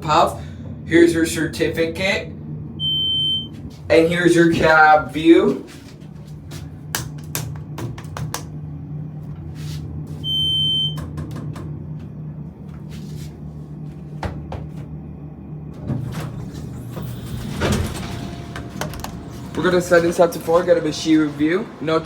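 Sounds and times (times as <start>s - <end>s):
elevator low hum: 0.0s - 22.0s
high electronic beep: 2.8s - 3.5s, 10.3s - 11.0s.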